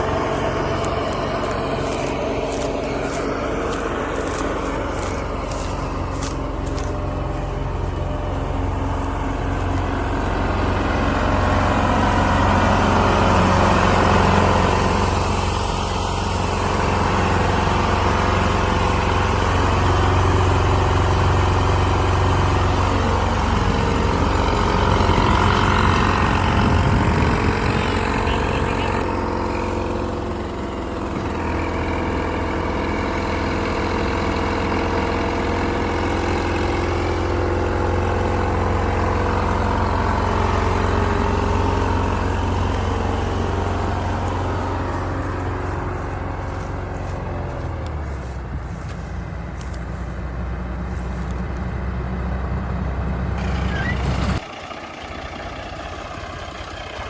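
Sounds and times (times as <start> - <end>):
combine harvester engine droning: 0.0 - 57.0.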